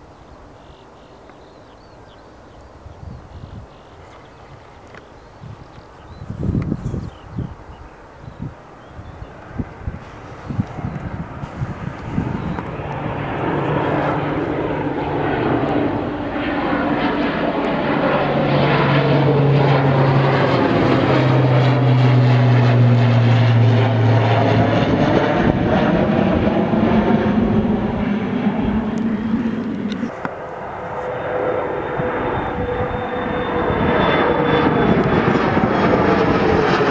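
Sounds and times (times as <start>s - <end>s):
airliner passing: 0.0s - 36.9s.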